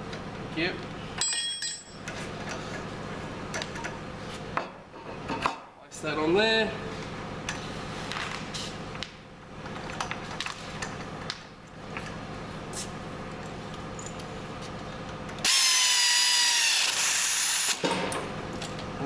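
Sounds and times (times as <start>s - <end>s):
pneumatic air ratchet: 15.4s - 18.1s.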